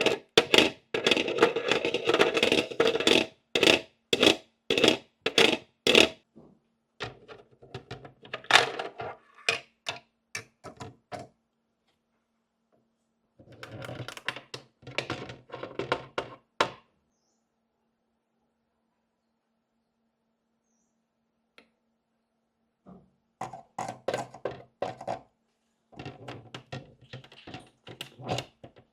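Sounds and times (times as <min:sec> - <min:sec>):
plastic pieces clicking and tapping: 0:00.0 - 0:06.2, 0:23.4 - 0:25.2, 0:26.0 - 0:28.9.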